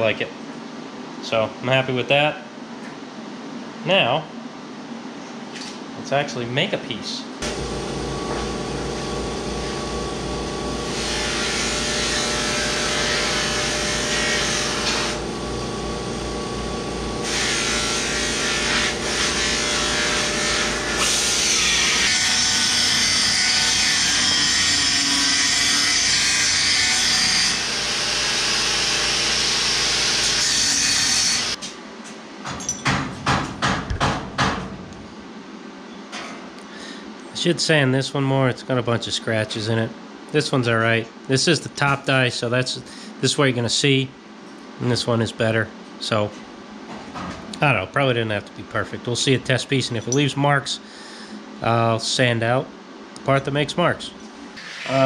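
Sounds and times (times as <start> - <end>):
power tool running: 7.4 - 31.6
sharp knocks: 32.5 - 34.8.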